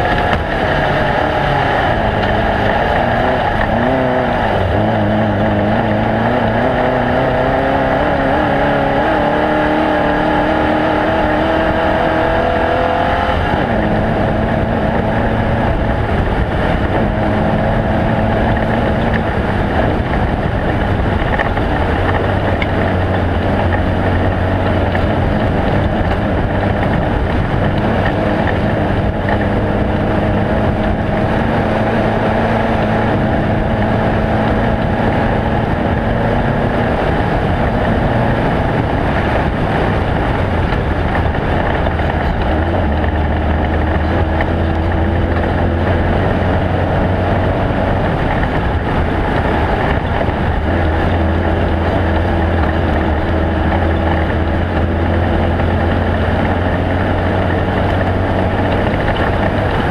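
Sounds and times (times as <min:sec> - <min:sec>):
race vehicle engine running hard: 0:00.0 - 0:59.9.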